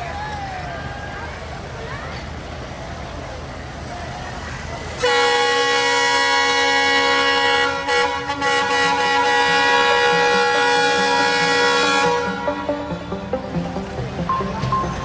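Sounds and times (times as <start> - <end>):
locomotive air horn blast: 5.0 - 13.9.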